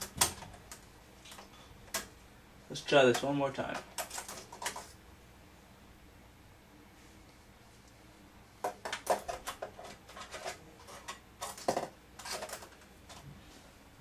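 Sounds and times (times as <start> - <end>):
thin metal shield clicking and rattling: 3.1 - 5.0, 8.6 - 13.2.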